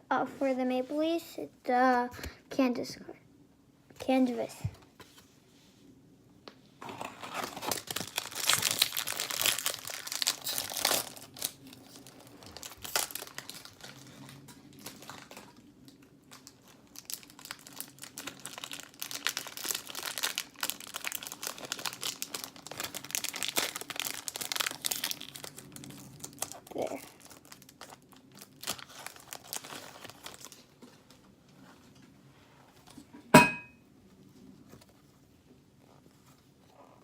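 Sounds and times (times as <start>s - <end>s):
plastic wrapper crinkling and tearing: 6.8s - 31.3s.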